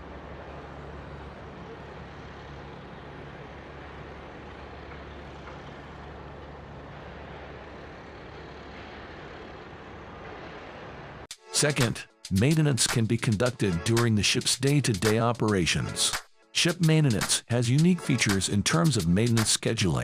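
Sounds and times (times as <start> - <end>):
low machinery hum and rumble: 0.0 - 11.3.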